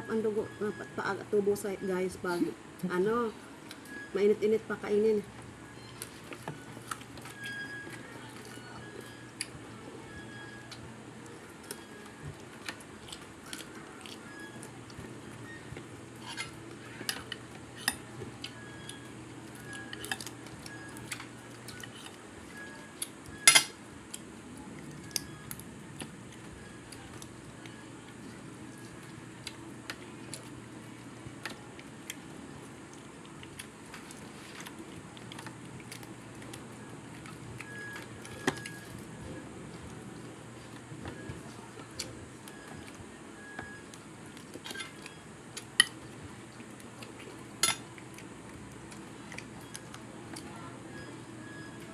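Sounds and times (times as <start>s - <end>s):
cutlery clinking on a plate: 23.4s - 23.8s, 47.6s - 47.8s.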